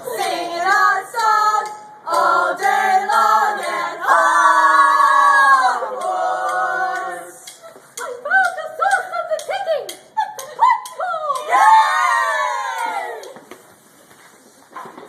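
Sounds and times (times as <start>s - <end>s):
voices singing unaccompanied: 0.0s - 9.2s.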